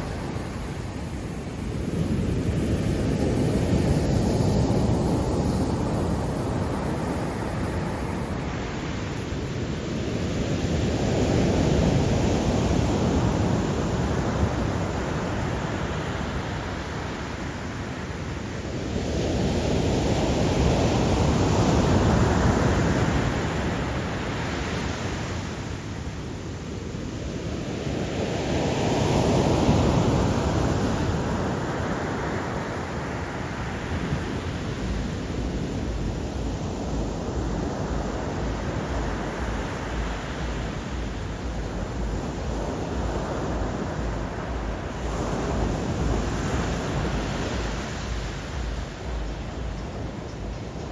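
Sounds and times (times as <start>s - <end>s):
waves breaking: 29.8s - 50.9s.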